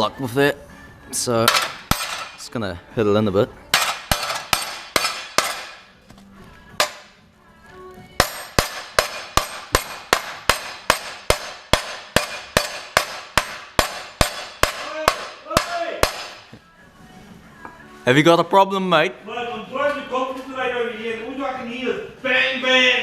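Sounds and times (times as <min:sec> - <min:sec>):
hammer blows on metal: 0:08.2 - 0:16.5.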